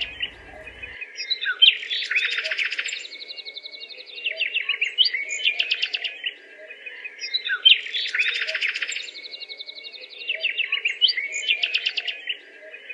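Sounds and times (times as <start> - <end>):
songbirds chirping: 0.0 - 1.0.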